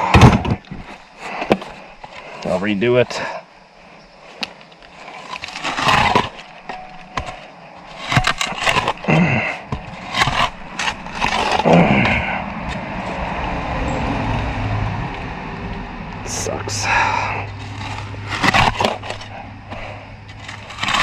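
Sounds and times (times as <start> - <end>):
hand tools scraping and knocking: 4.3 - 12.8, 16.3 - 21.0
low rumble: 11.6 - 20.8.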